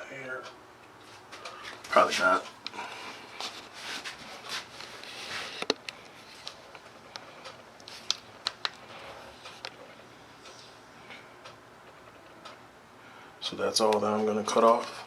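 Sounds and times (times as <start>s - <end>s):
phone rubbing and scraping: 3.4s - 6.4s.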